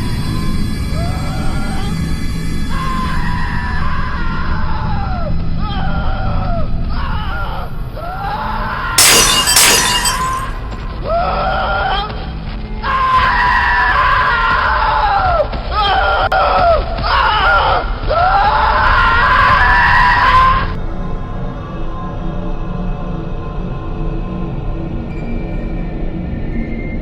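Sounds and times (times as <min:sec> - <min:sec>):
glass shattering: 0:09.0 - 0:10.6.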